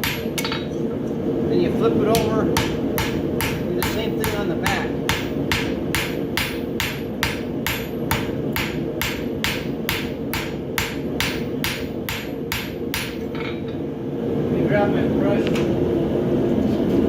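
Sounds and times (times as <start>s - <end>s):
hammer striking steel on anvil: 0.0s - 0.7s, 2.1s - 13.8s.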